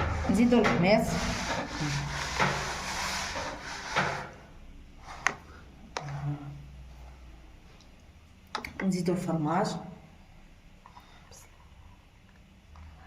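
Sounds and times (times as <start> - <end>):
utensil scraping: 0.0 - 4.4.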